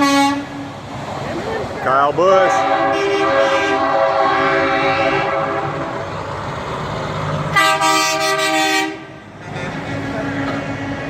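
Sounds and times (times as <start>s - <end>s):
truck air horn blast: 0.0s - 0.7s, 2.4s - 6.0s, 7.5s - 11.0s
diesel truck rumbling past: 0.0s - 11.0s.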